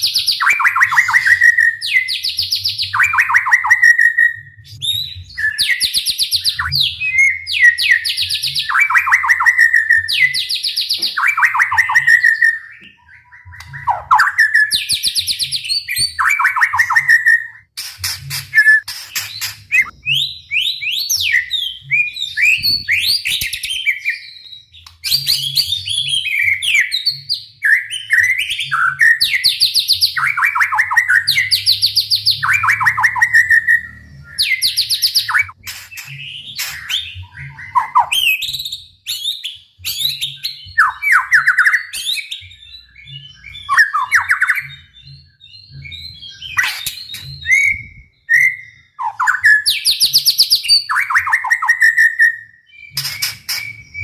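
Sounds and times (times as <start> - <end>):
bird singing varied whistles and trills: 0.0 - 54.0.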